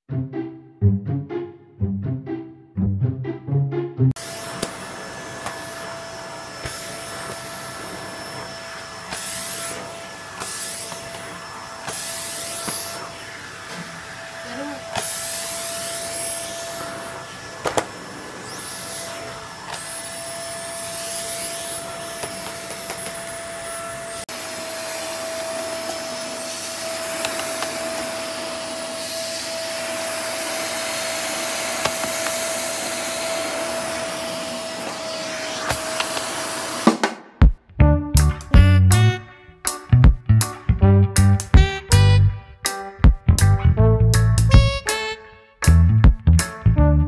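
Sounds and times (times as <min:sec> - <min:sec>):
vacuum cleaner motor whining: 0:04.2 - 0:37.1.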